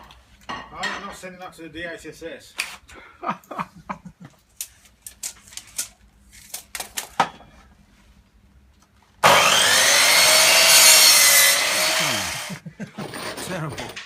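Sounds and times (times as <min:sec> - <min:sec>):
saw cutting wood: 0:09.2 - 0:13.7.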